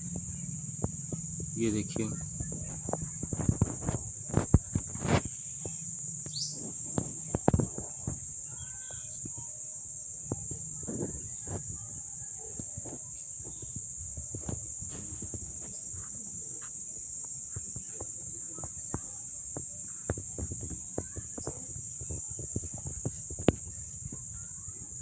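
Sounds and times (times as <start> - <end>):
high-pitched insect chorus: 0.0 - 25.0
soft knocks and scuffs: 10.2 - 25.0.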